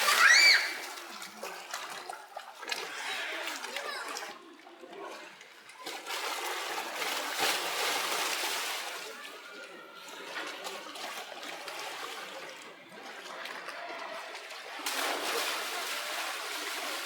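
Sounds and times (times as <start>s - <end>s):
water splashing and sloshing: 0.0s - 17.0s.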